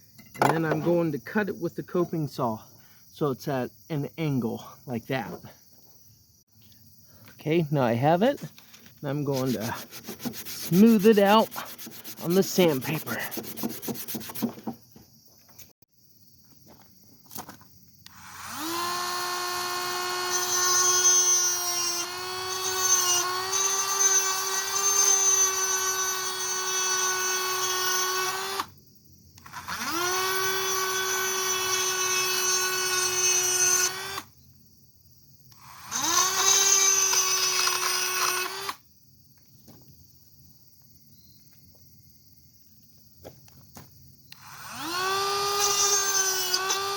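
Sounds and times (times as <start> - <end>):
power drill whining: 8.8 - 14.7, 18.1 - 28.7, 29.4 - 34.3, 35.5 - 38.8, 44.3 - 46.9.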